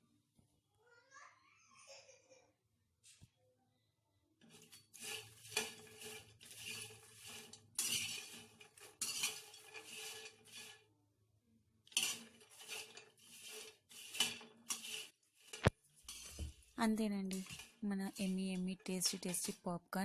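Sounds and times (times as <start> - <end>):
popcorn rustling: 4.4 - 10.9, 11.9 - 20.0
spoon scraping metal pan: 4.4 - 10.9, 11.9 - 20.0.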